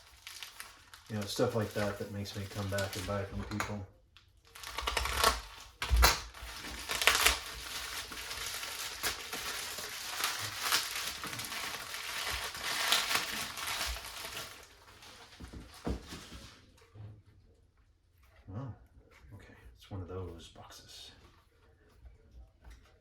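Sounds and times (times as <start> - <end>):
packaging crinkling: 0.0 - 3.8, 4.4 - 15.9.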